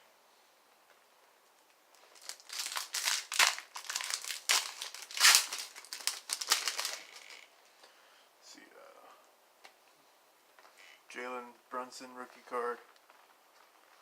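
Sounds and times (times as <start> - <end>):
plastic wrapper crinkling: 1.9 - 7.5.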